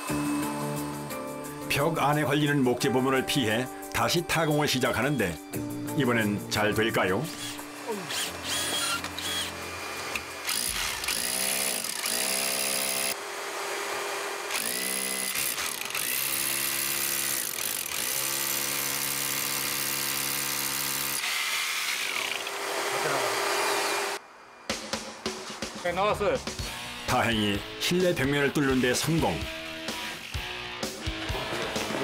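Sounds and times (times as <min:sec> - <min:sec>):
electric drill whining: 0:07.3 - 0:24.2.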